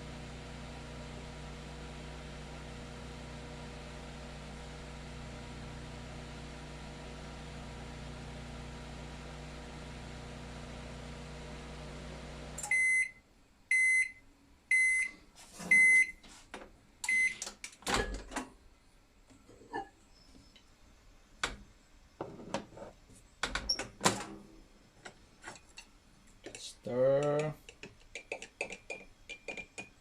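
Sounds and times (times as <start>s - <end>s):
microwave oven humming: 0.0s - 13.0s
microwave beeps: 12.6s - 16.2s, 17.0s - 17.4s.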